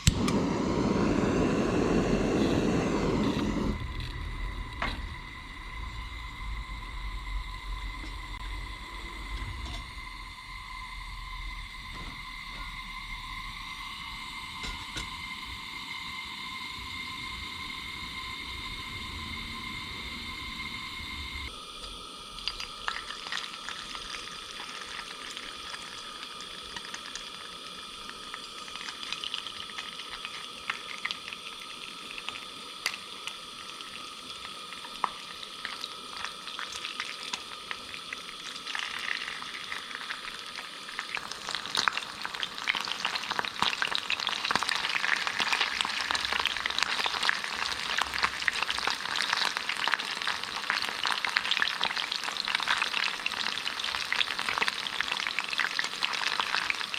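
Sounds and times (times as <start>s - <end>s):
fish sizzling in hot oil: 21.5s - 56.9s.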